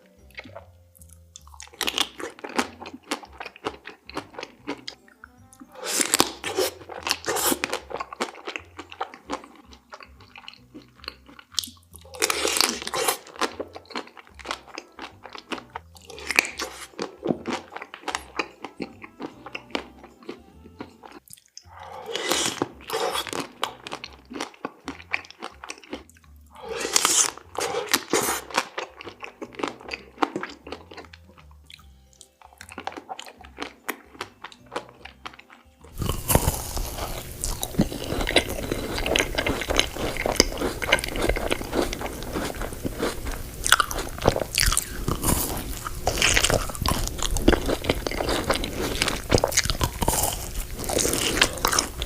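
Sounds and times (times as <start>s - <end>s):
wet chewing: 0.0s - 52.0s
crunching of chocolate shell: 1.0s - 5.0s, 5.8s - 20.3s, 21.2s - 52.0s.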